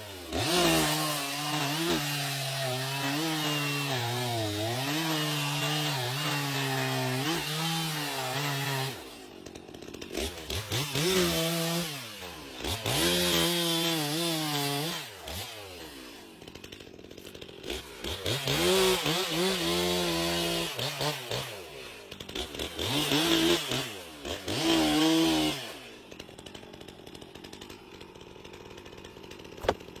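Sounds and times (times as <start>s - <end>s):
chainsaw revving: 0.0s - 30.0s.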